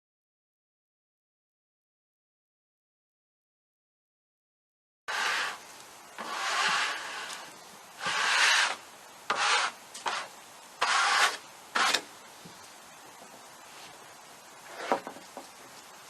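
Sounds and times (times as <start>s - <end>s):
wood scraping over wood: 5.1s - 5.6s, 6.2s - 12.6s, 13.7s - 15.5s.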